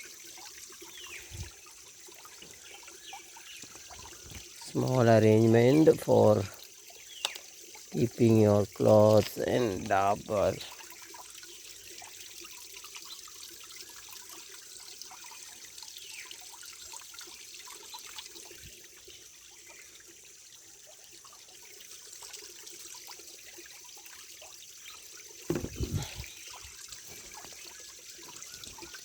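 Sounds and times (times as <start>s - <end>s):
small waterfall splashing: 0.0s - 29.0s
low thumps: 25.5s - 26.3s.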